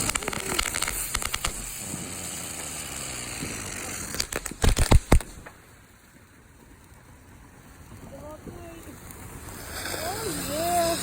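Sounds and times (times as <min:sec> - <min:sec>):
firework bangs: 0:00.0 - 0:06.2
firework hissing: 0:00.0 - 0:11.0.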